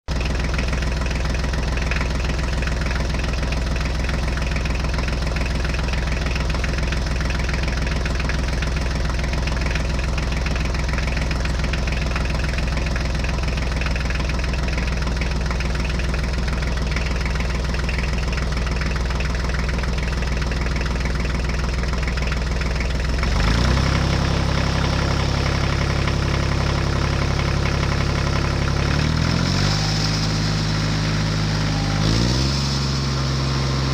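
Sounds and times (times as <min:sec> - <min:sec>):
engine idling: 0:00.0 - 0:33.9.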